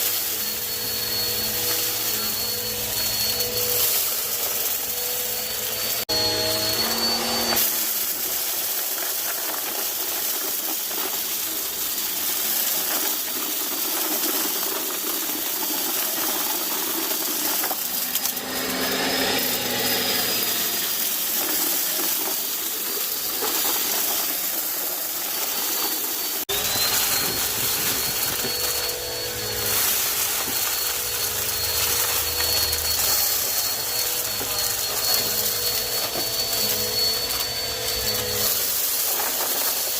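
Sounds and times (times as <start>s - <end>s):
debris rattling in vacuum: 0.0s - 39.9s
vacuum cleaner whine: 0.0s - 39.9s.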